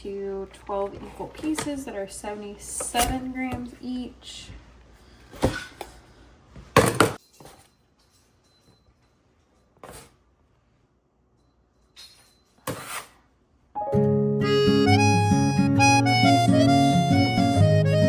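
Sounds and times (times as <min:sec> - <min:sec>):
music with reedy harmonica lead: 0:14.0 - 0:18.0.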